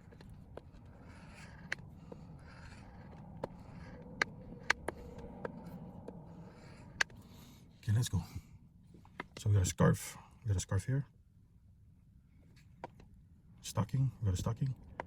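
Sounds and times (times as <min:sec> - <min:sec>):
coin scratching lottery ticket: 0:00.0 - 0:07.5.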